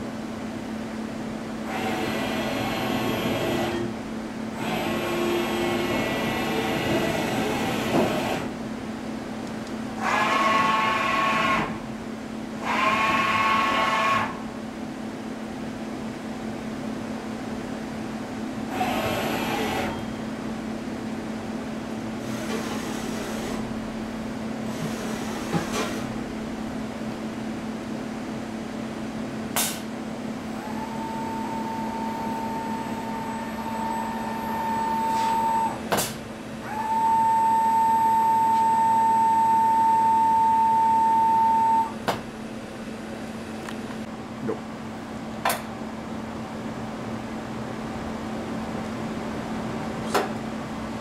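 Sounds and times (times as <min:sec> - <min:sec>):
machine electrical hum: 0:00.0 - 0:51.0
motor whine: 0:30.6 - 0:35.8.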